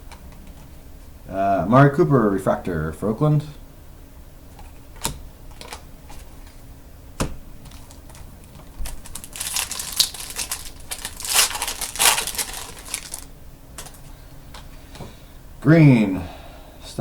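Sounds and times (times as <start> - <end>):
foil wrappers crinkling: 8.7 - 14.0.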